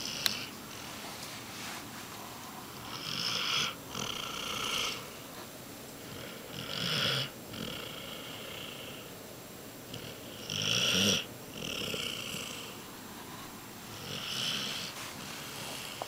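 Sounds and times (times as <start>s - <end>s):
dog snoring: 0.0s - 0.5s, 2.7s - 5.2s, 6.0s - 9.1s, 9.9s - 12.8s, 13.9s - 16.0s.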